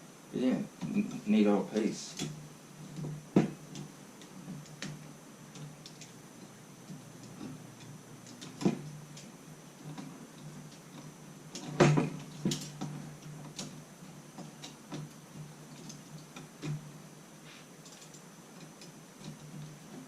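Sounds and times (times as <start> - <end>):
metal parts rattling: 1.9 - 16.9, 17.8 - 20.0.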